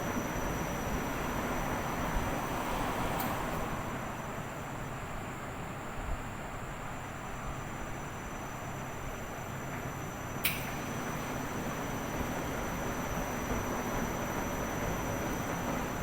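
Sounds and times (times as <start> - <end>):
washing machine running: 10.7 - 16.0.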